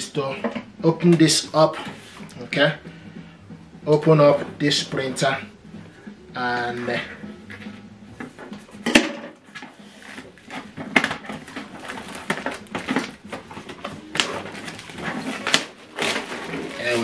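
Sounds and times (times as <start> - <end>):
plastic packing rustling: 8.4 - 17.0.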